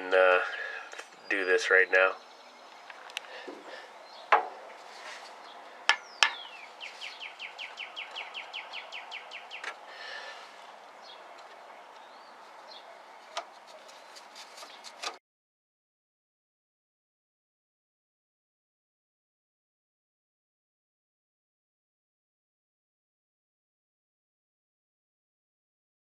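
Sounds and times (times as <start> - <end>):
bird trilling: 5.4 - 11.3
hand tools clicking and knocking: 5.9 - 6.5.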